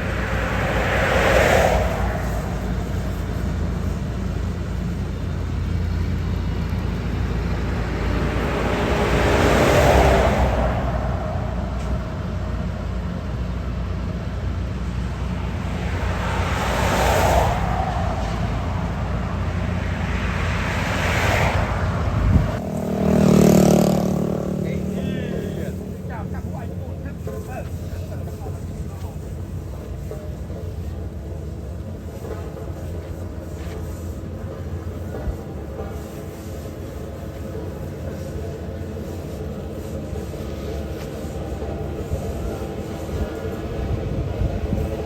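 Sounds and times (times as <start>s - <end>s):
vehicle engine rumbling: 0.0s - 45.0s.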